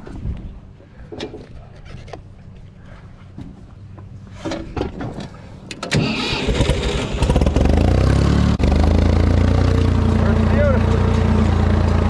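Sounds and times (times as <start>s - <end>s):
tractor engine running: 5.6s - 12.0s.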